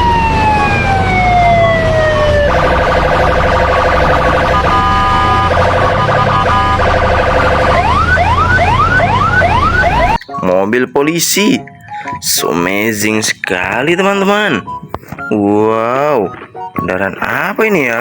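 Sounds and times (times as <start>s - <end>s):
blaring siren chord: 0.0s - 10.2s
low engine rumble: 0.0s - 10.2s
police siren wailing: 0.0s - 10.2s
siren whooping: 0.0s - 10.2s.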